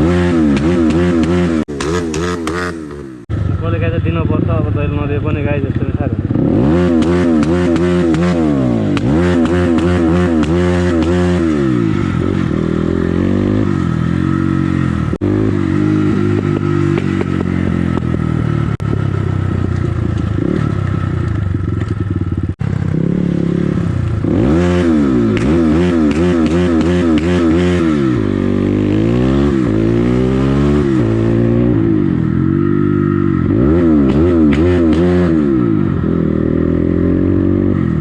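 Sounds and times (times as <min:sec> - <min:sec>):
dirt bike engine revving: 0:00.0 - 0:03.6, 0:06.2 - 0:19.4, 0:20.3 - 0:38.0
exhaust crackling: 0:01.2 - 0:05.7.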